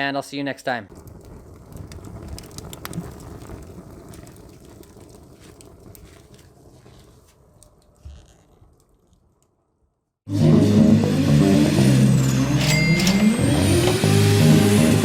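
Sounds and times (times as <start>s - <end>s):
car engine accelerating: 10.3s - 15.0s
high whine: 10.3s - 15.0s.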